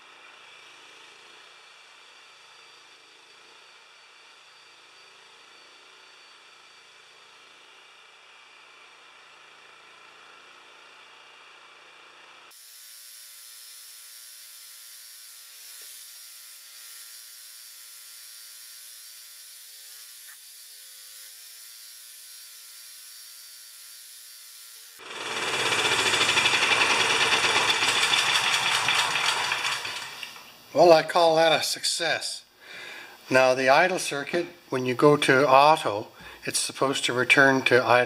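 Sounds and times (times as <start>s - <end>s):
circular saw running: 24.4s - 31.5s
generator engine running: 25.0s - 30.6s.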